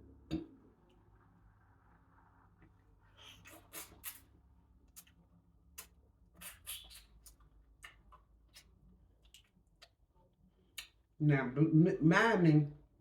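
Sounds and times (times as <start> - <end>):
mouth clicks of eating: 4.9 - 10.0.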